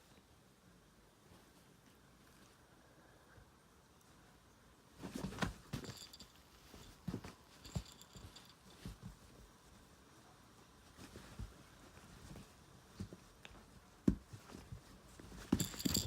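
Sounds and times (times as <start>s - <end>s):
cats scuffling: 4.9s - 16.0s
rustling: 4.9s - 16.0s.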